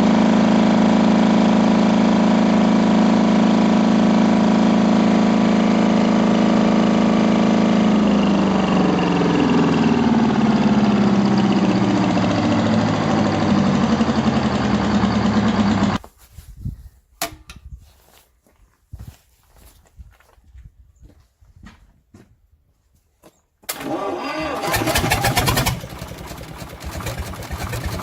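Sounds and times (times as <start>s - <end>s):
generator engine running: 0.0s - 16.0s, 23.7s - 28.0s.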